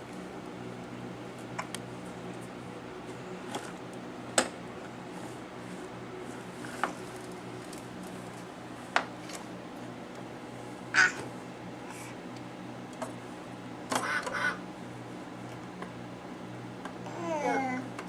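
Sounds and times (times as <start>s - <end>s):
steady background hum: 0.0s - 18.0s.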